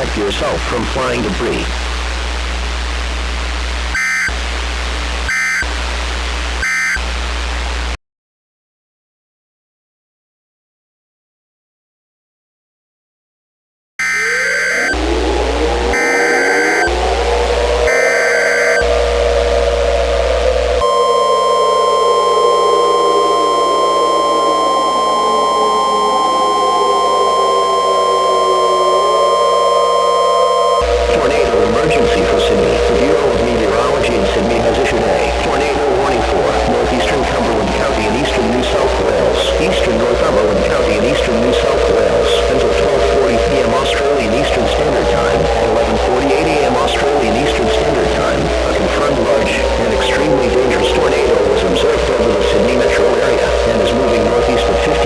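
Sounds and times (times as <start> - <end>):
radio static: 0.0 - 8.0, 14.0 - 55.0
digital data tone bursts: 3.9 - 7.2, 14.0 - 15.1, 15.8 - 55.0
low hum: 14.1 - 55.0.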